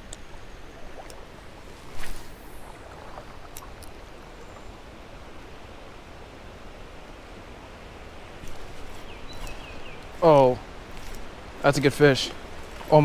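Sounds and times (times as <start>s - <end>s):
faint ticks: 0.0s - 4.5s
creek water over rapids: 0.0s - 13.0s.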